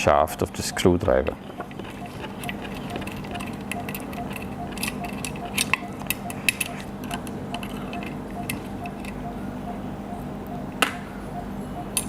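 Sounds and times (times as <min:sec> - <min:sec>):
steady low hum: 0:00.0 - 0:12.0
screwdriver clicking on screws: 0:01.6 - 0:09.2.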